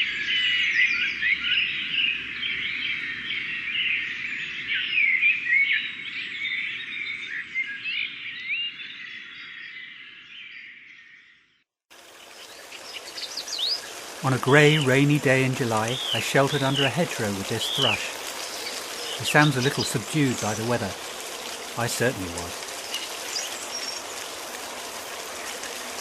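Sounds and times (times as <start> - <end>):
songbirds singing: 0.0 - 26.0
rain hissing: 11.9 - 26.0.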